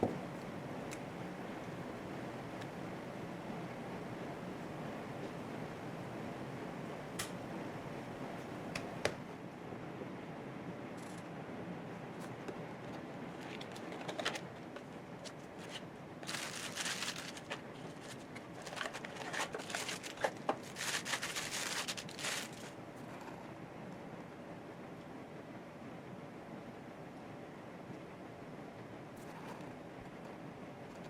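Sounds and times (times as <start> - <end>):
packaging rustling and crinkling: 12.9 - 22.8.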